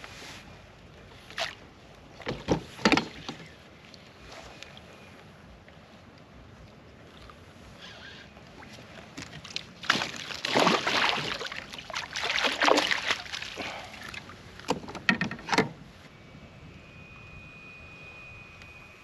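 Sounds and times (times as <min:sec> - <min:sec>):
water splashing against kayak: 0:08.6 - 0:14.8.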